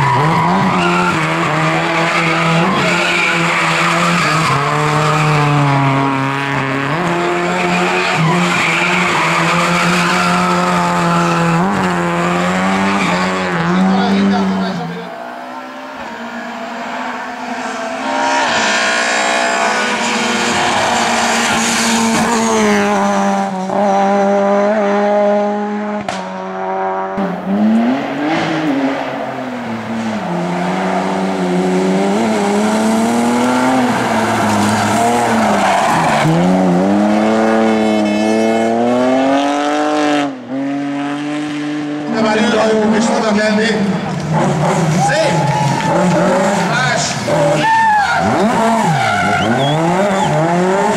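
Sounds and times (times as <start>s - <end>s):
rally car engine revving: 0.0s - 50.9s.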